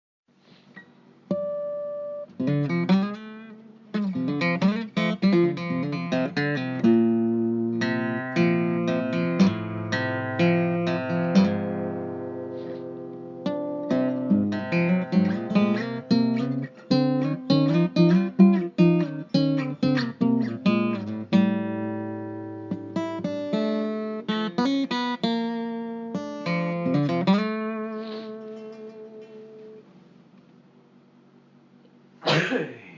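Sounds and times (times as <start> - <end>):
acoustic guitar playing: 1.2 - 30.3.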